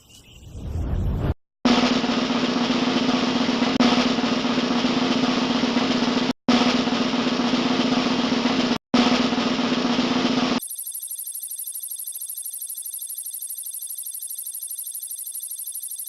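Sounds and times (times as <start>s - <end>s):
fast snare drum roll: 1.7s - 10.6s.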